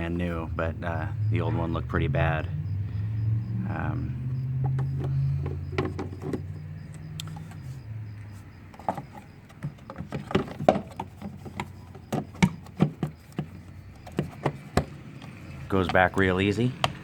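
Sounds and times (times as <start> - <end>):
low rumble: 0.0 - 5.4
plastic clicks and knocks: 4.6 - 7.6, 8.7 - 17.0.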